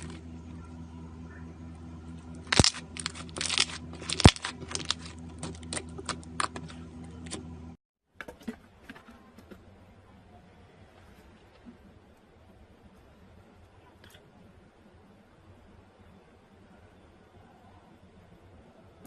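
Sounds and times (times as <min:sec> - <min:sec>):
steady low hum: 0:00.0 - 0:07.8.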